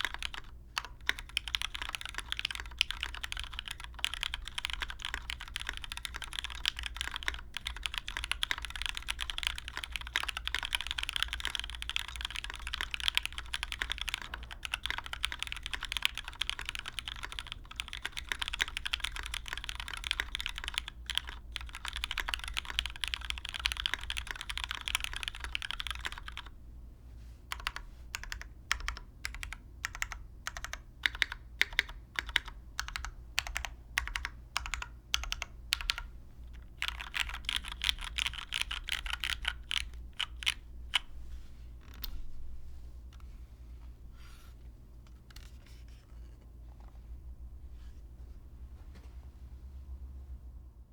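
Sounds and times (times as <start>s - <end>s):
mechanical keyboard typing: 0.0s - 26.6s, 27.5s - 41.1s.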